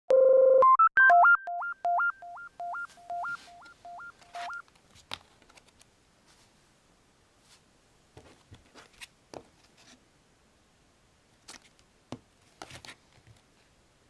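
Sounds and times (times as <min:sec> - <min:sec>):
beeping synthesizer jingle: 0:00.1 - 0:04.6.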